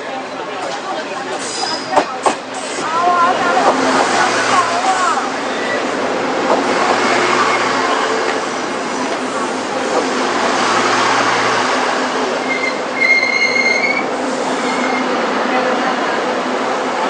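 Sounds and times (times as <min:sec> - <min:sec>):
train running: 0:00.0 - 0:17.0
high wheel squeal: 0:12.4 - 0:15.1.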